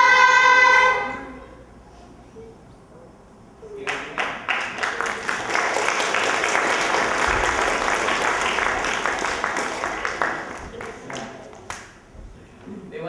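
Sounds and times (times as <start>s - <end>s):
audience applauding: 3.8s - 12.1s.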